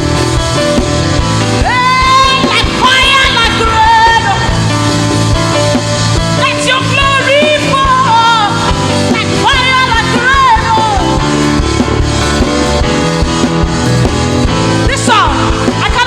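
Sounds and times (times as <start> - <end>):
band accompaniment: 0.0 - 16.0
person singing high: 1.6 - 4.6.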